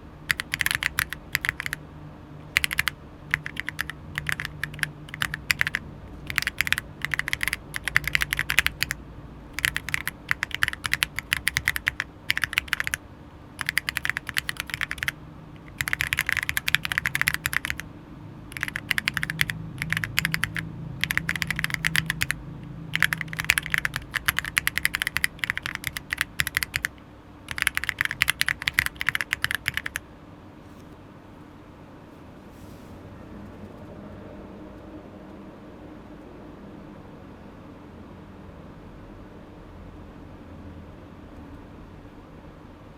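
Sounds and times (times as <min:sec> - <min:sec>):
fast keyboard typing: 0:00.3 - 0:01.8, 0:02.4 - 0:09.0, 0:09.6 - 0:13.0, 0:13.6 - 0:17.8, 0:18.5 - 0:30.0.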